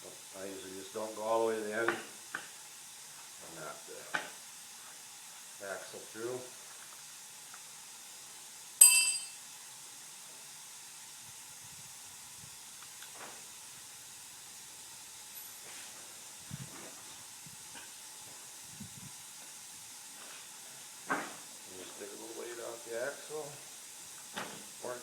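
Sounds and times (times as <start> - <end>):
steady hiss: 0.0 - 25.0
loud ringing metal strike: 8.8 - 9.4.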